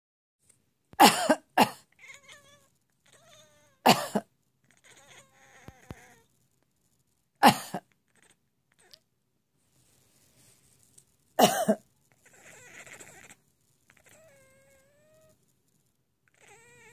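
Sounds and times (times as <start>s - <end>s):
woman coughing hard: 1.0s - 1.9s, 3.9s - 4.2s, 7.4s - 7.8s, 11.4s - 11.8s
pet animal wavering calls: 2.0s - 3.9s, 4.7s - 6.3s, 12.2s - 15.4s, 16.3s - 16.9s.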